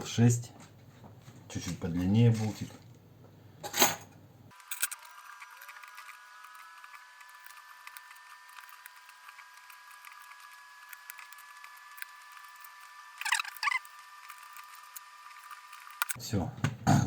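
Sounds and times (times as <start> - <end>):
screwdriver clicks and scrapes: 4.5 - 16.2.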